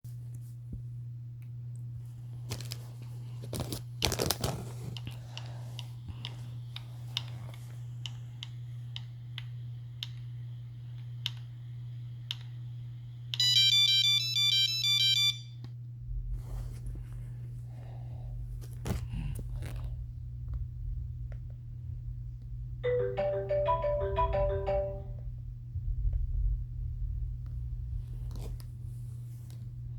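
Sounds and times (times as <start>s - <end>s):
low electrical hum: 0.1s - 29.9s
phone ringtone beeping melody: 22.8s - 25.2s.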